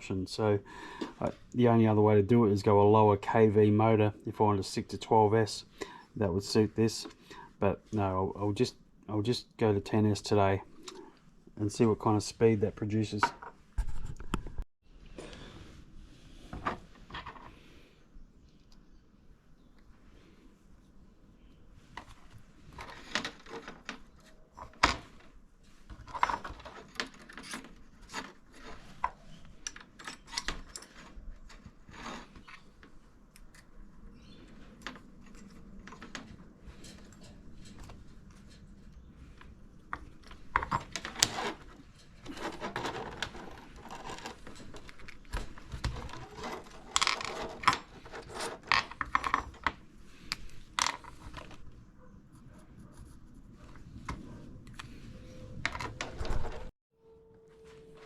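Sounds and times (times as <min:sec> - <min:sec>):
hands handling small parts and tools: 0:21.8 - 0:51.8, 0:53.6 - 0:56.7.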